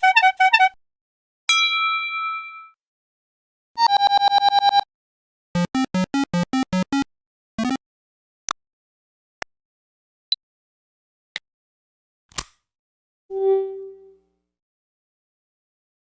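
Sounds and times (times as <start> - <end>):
phone alert tones: 5.6 - 7.0.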